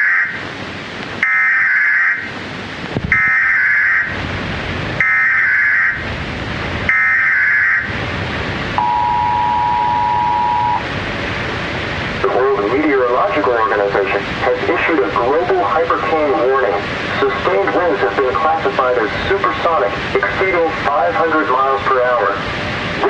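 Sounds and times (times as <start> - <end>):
static hiss: 0.0 - 23.0
buzzy data-tone bursts: 8.8 - 10.9
two-note attention tone: 8.8 - 10.9.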